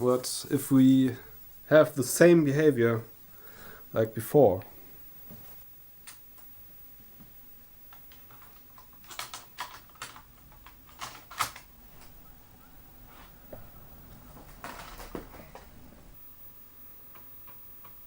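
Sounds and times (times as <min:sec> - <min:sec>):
computer controls clicking: 0:07.9 - 0:16.2.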